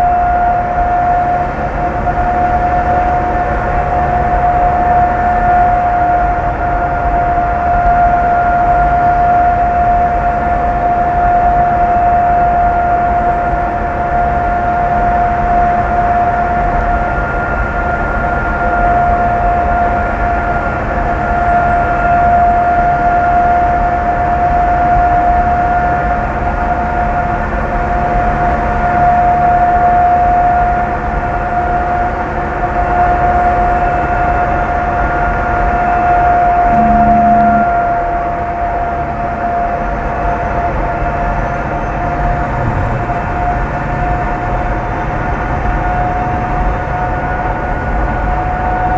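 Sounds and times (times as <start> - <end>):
diesel engine rumble: 36.5 - 48.9
turbo whistle: 36.6 - 38.6.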